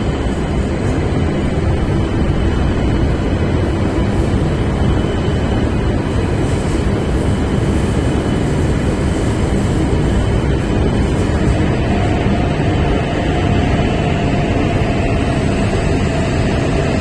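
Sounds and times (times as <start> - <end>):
train rolling rumble: 0.0 - 17.0.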